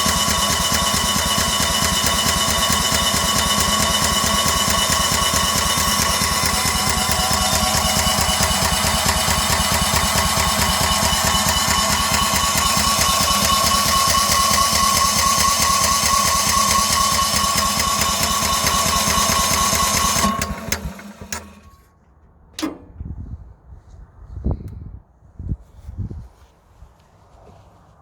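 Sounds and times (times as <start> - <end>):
engine running with high whine: 0.0 - 23.0
clicks and knocks: 22.6 - 23.1.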